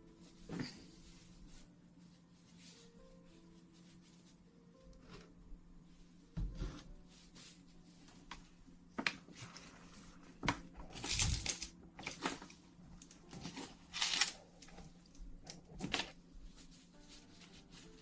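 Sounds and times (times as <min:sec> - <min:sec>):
rustling: 0:09.2 - 0:18.0.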